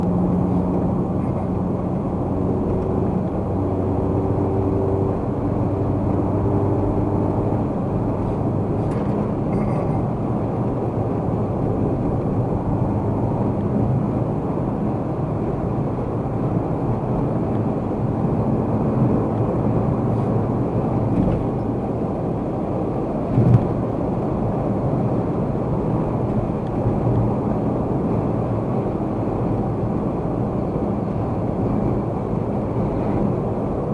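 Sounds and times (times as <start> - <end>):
car road and engine noise: 0.0 - 33.9
low hum: 8.0 - 10.3.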